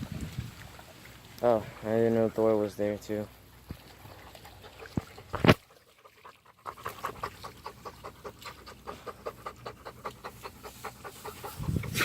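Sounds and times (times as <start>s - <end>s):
dog panting: 6.0s - 12.0s.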